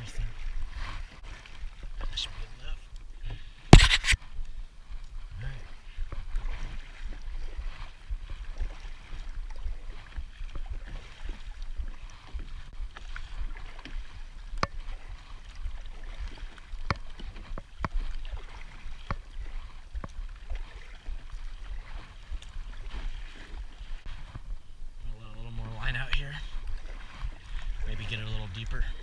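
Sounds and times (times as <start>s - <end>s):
water washing around kayak: 0.0s - 29.0s
wind rumbling on microphone: 0.0s - 29.0s
sharp clicks or knocks: 3.7s - 4.2s.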